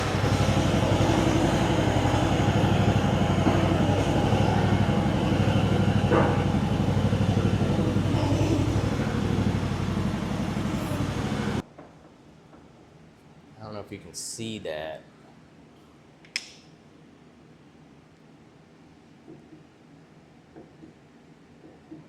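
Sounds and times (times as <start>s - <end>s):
mini excavator engine running: 0.0s - 11.6s.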